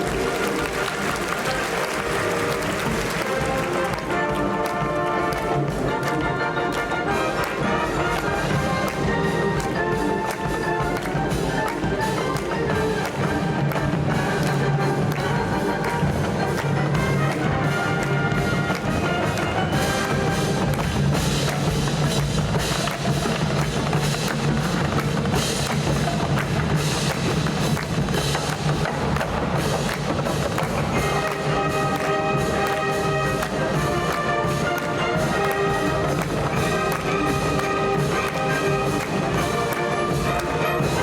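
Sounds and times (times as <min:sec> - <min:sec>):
sustained brass chords: 0:00.0 - 0:23.4, 0:30.6 - 0:41.0
drums and percussion beat: 0:00.0 - 0:41.0.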